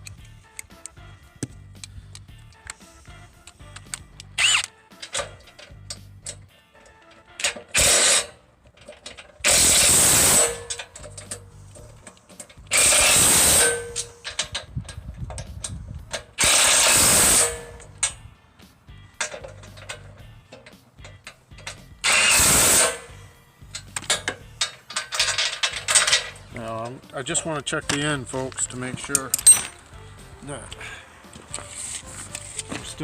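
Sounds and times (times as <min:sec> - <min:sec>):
power tool driving bolts: 0:03.9 - 0:15.5, 0:16.1 - 0:18.2, 0:19.2 - 0:26.6
light metal clicks and clanks: 0:08.6 - 0:09.4, 0:10.6 - 0:12.7, 0:19.2 - 0:21.9, 0:23.7 - 0:29.8.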